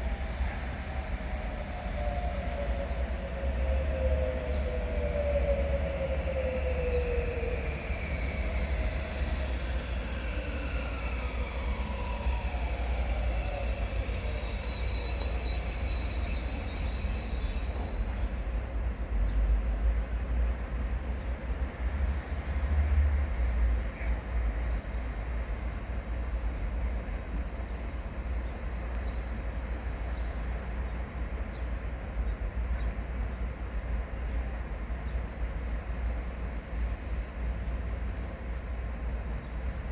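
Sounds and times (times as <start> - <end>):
faint tones sliding downward: 0.0 - 18.6
freight train rumbling past: 0.0 - 39.9.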